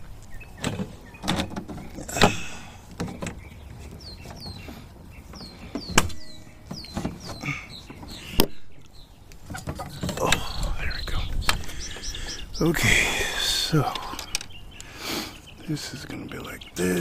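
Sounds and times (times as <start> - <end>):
small bird chirping: 0.0 - 17.0
hardware knocking and clunking: 0.5 - 8.8, 9.4 - 10.5.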